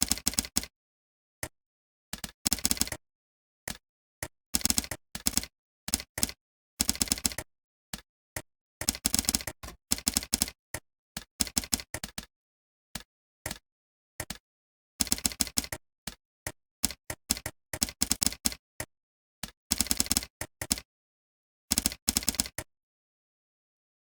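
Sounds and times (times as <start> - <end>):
typing on keyboard: 0.0 - 0.7, 2.2 - 3.0, 4.6 - 7.5, 8.8 - 12.3, 13.0 - 13.6, 14.2 - 14.4, 15.0 - 18.6, 19.4 - 20.9, 21.7 - 22.7.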